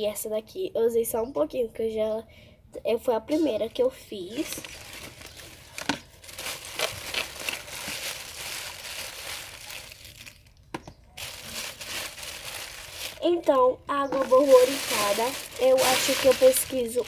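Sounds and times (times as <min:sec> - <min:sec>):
plastic crinkling: 0:04.3 - 0:17.0.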